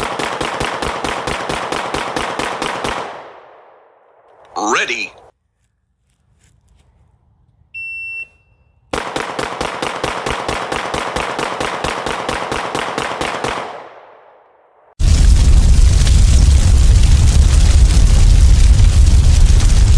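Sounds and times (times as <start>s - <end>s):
rapid pistol shots: 0.0s - 4.0s, 8.9s - 14.4s.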